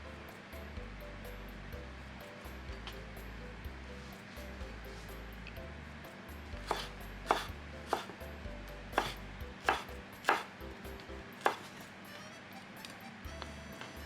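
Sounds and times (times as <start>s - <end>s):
knife chopping on cutting board: 6.6s - 8.2s, 8.9s - 10.6s, 11.4s - 11.9s.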